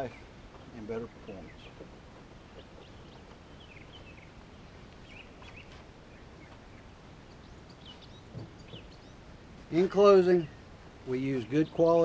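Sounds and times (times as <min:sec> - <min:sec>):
low background hiss: 0:00.0 - 0:12.0
faint bird chirps: 0:02.5 - 0:09.2.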